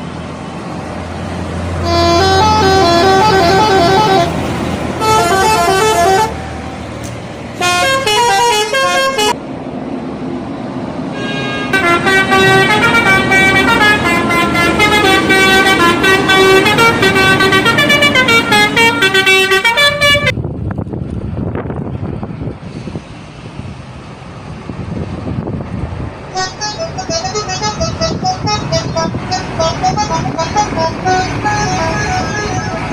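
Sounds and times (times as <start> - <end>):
musical air horn melody: 1.8 - 6.5, 7.6 - 9.4, 11.2 - 20.3, 26.3 - 32.9.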